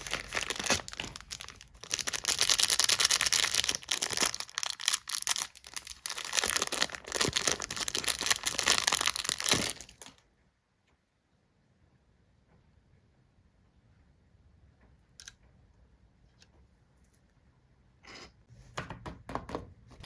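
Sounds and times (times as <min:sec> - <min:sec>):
packaging crinkling and tearing: 0:00.0 - 0:10.2.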